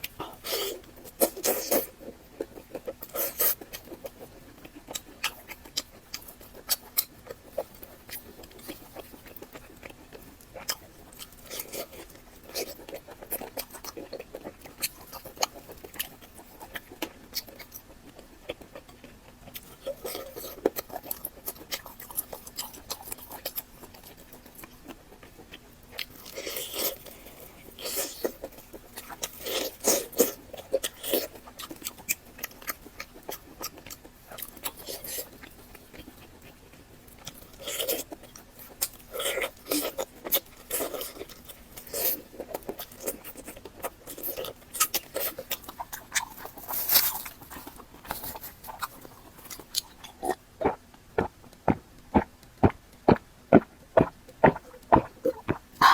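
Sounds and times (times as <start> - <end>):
wet chewing and lip smacks: 0.0 - 55.9
crunchy bites: 37.2 - 55.9.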